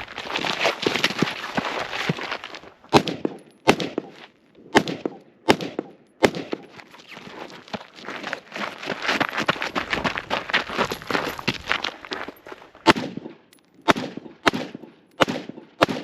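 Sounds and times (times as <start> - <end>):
rifle shots: 2.9 - 6.7, 12.8 - 16.0
rustling and clattering movement: 6.6 - 12.8.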